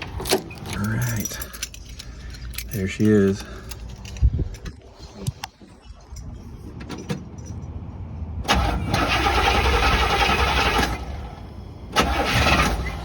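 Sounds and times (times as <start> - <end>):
car engine cranking and starting: 8.4 - 13.0.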